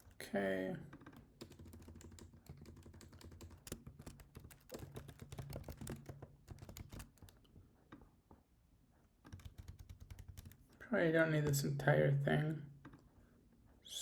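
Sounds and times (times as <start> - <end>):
keyboard typing: 1.1 - 7.4, 9.3 - 10.8.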